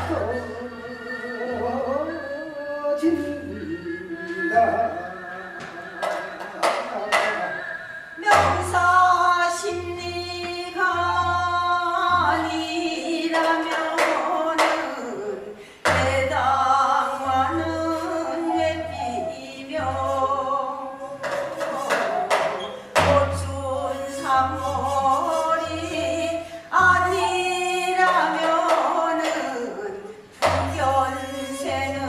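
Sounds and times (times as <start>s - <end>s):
folk singing voices: 0.0s - 32.0s
sharp percussive strikes: 5.6s - 7.6s, 8.3s - 9.0s, 21.2s - 23.5s, 30.4s - 31.7s.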